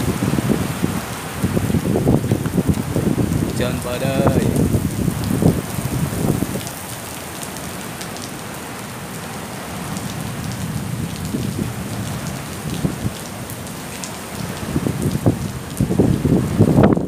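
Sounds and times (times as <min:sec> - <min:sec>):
heavy rain pouring: 0:00.0 - 0:17.0
raindrop ticks: 0:02.2 - 0:02.8, 0:06.5 - 0:08.9, 0:09.9 - 0:15.8.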